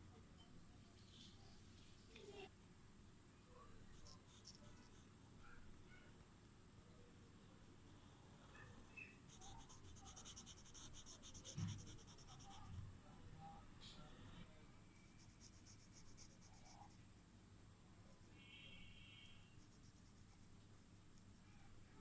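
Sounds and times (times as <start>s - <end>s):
drawing tool scratching paper: 9.3s - 12.8s, 15.0s - 16.8s.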